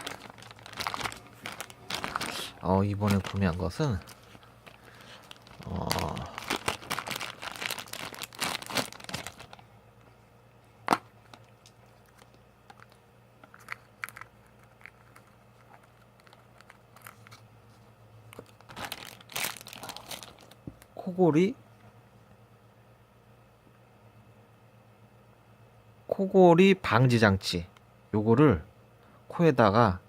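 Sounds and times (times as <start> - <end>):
plastic packaging crinkling: 0.0 - 9.6, 10.8 - 20.9.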